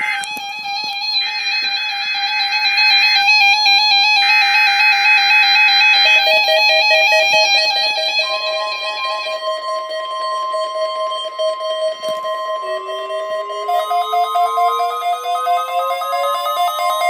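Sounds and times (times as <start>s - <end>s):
steady single-pitch alarm tone: 0.3s - 17.0s
warbling electronic tone: 12.6s - 17.0s.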